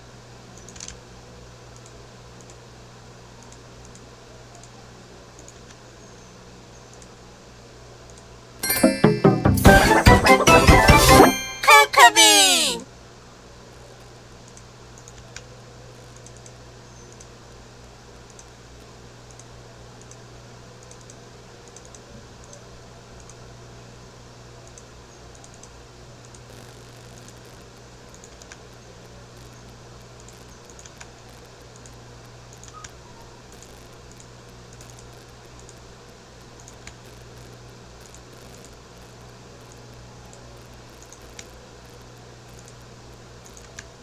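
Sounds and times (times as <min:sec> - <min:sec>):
faint clicks: 0:00.6 - 0:01.0, 0:05.4 - 0:05.8, 0:06.9 - 0:07.1, 0:30.1 - 0:35.8, 0:36.5 - 0:38.8, 0:39.6 - 0:41.6, 0:42.5 - 0:42.8, 0:43.4 - 0:43.9
low electrical hum: 0:12.9 - 0:44.0.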